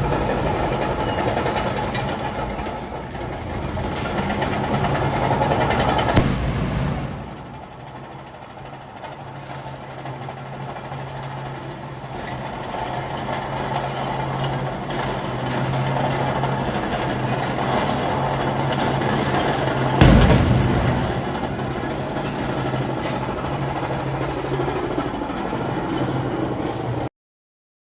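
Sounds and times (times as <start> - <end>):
bulldozer diesel engine running: 0.0 - 27.1
loud heavy bang: 3.7 - 11.5, 14.2 - 25.3.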